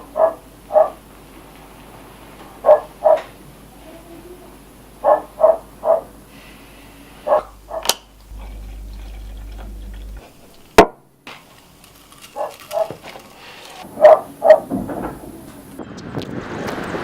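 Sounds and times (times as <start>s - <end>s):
dog barking: 0.0s - 1.0s, 2.6s - 3.4s, 5.0s - 6.2s, 7.3s - 8.0s, 12.4s - 13.0s, 14.0s - 14.8s
low steady hum: 7.0s - 11.2s.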